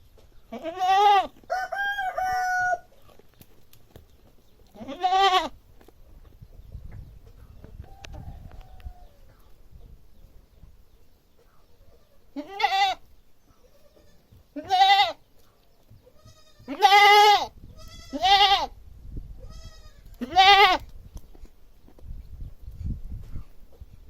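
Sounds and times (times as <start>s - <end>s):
goat bleating: 0.5s - 1.4s, 4.8s - 5.5s, 12.3s - 15.3s, 16.1s - 18.7s, 19.4s - 20.8s.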